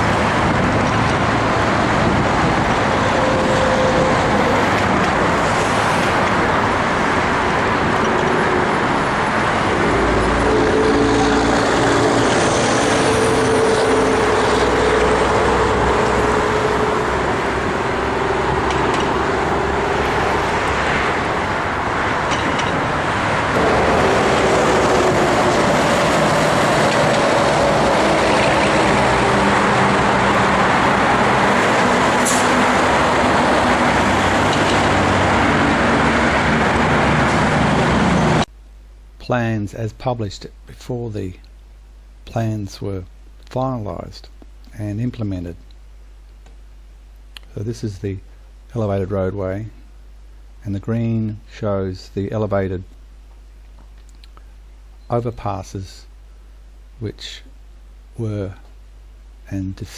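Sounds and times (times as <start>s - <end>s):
road traffic noise: 0.0s - 38.8s.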